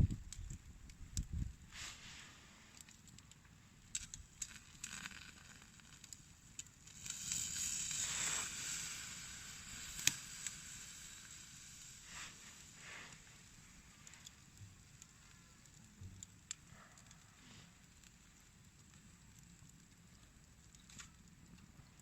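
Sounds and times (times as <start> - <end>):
campfire crackling: 0.0 - 22.0
fire hissing: 0.0 - 22.0
sharp crack: 3.9 - 13.2.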